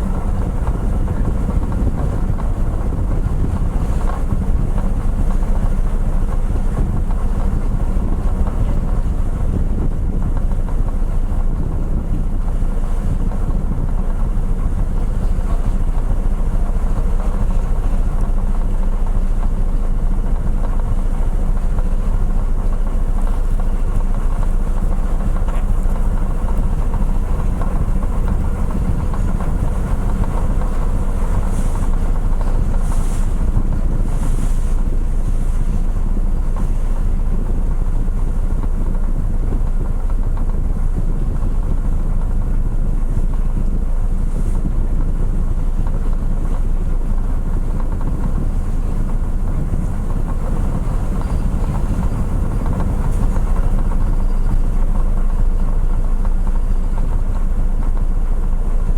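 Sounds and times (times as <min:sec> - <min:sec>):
ferry engines low drone: 0:00.0 - 0:58.9
wind noise on microphone: 0:00.0 - 0:58.9.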